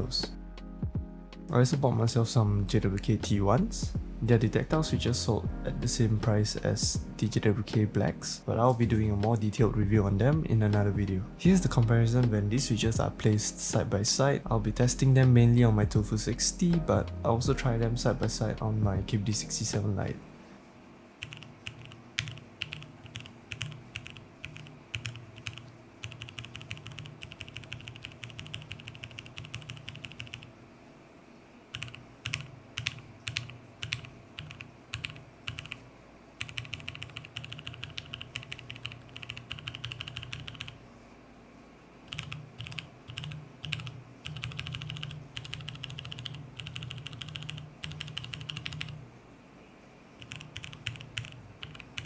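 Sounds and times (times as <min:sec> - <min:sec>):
mechanical keyboard typing: 0:21.2 - 0:30.5, 0:31.7 - 0:35.8, 0:36.4 - 0:40.8, 0:42.1 - 0:49.0, 0:50.2 - 0:52.0.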